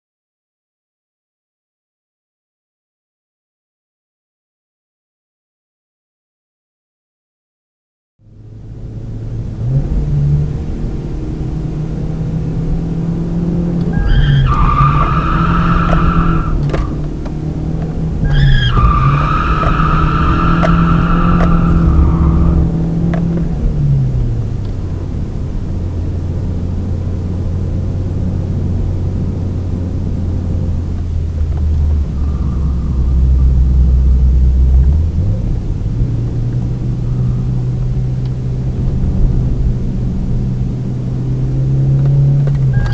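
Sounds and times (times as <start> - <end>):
car engine at high revs: 8.2 - 42.9
tyres squealing: 13.9 - 23.3.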